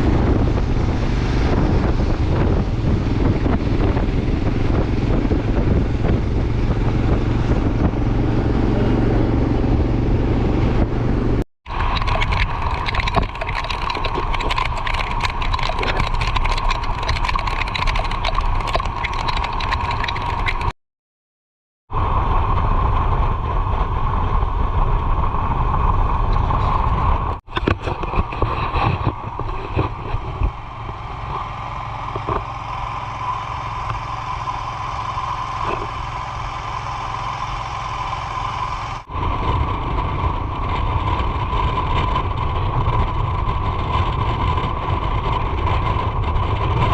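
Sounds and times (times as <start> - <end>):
vehicle driving on road: 0.0 - 20.7, 21.9 - 46.9
wind rushing over microphone: 0.0 - 20.7, 21.9 - 46.9.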